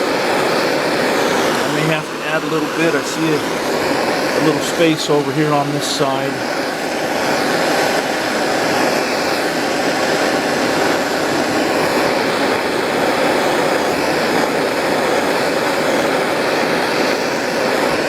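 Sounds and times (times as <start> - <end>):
propane torch flame hissing: 0.0 - 18.0.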